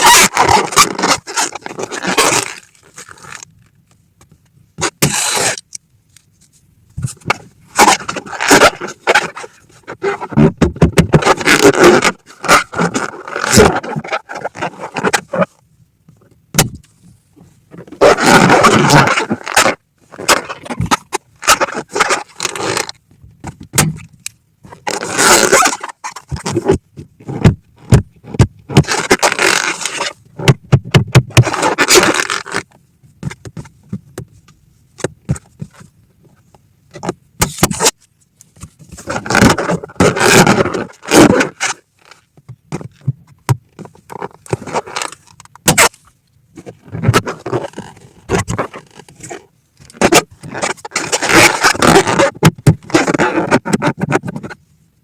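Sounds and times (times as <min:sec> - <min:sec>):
rubber balloons squeaking: 0:00.0 - 0:03.4, 0:04.8 - 0:05.6, 0:07.1 - 0:15.6, 0:17.7 - 0:23.0, 0:24.7 - 0:32.7, 0:39.0 - 0:42.2, 0:43.8 - 0:45.9, 0:46.6 - 0:54.5.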